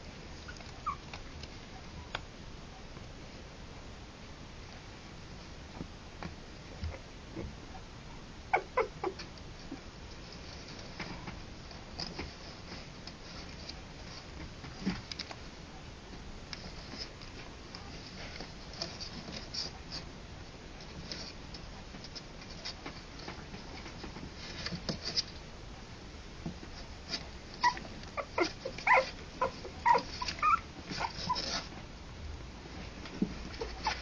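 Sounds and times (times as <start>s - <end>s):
puppies whimpering and squeaking: 0.4s - 1.1s, 8.5s - 9.3s, 27.6s - 31.7s, 33.4s - 34.0s.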